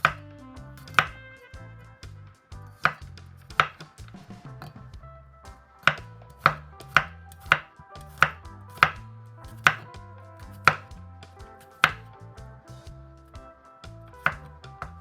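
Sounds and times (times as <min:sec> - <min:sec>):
soft background music: 0:00.0 - 0:15.0
knife chopping on cutting board: 0:02.8 - 0:03.8, 0:06.4 - 0:09.9, 0:10.6 - 0:10.9, 0:11.8 - 0:12.0.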